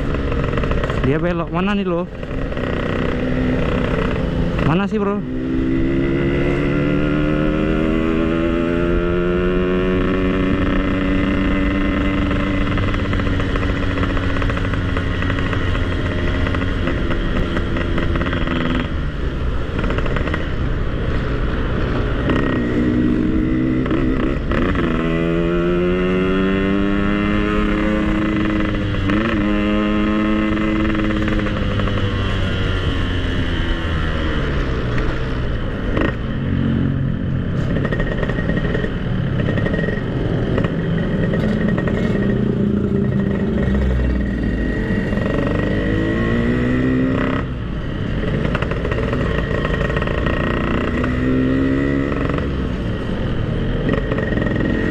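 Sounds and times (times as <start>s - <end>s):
motorcycle engine revving: 0.0s - 54.9s.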